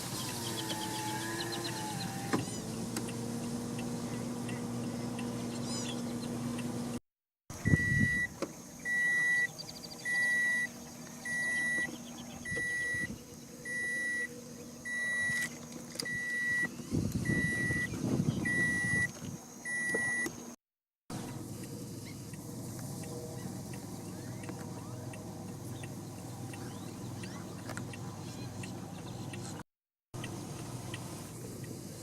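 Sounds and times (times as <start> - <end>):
low engine rumble: 0.0 - 19.5, 21.1 - 29.6, 30.2 - 32.0
vehicle backup alarm beeping: 7.5 - 20.4, 22.3 - 29.4.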